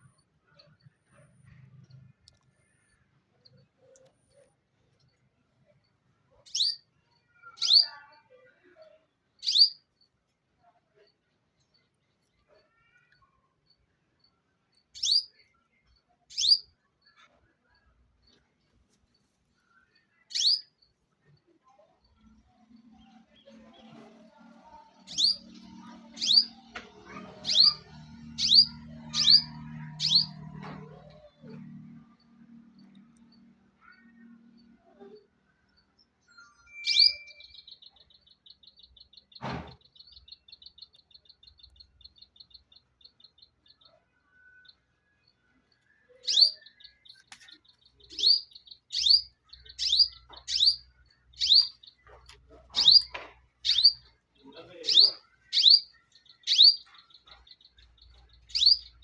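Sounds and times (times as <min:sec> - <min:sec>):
bird chirping: 0:06.3 - 0:08.0, 0:08.8 - 0:10.1, 0:14.2 - 0:18.5, 0:19.2 - 0:59.0
bird chirp sweeping downward: 0:25.0 - 0:26.7, 0:27.4 - 0:30.5, 0:36.2 - 0:38.2, 0:46.1 - 0:52.0, 0:52.8 - 0:54.1, 0:54.7 - 0:56.9, 0:58.5 - 0:59.0.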